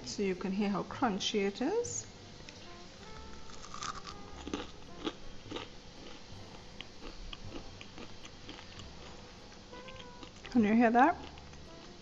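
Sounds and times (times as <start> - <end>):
crunchy chewing of fried food: 2.5 - 12.0.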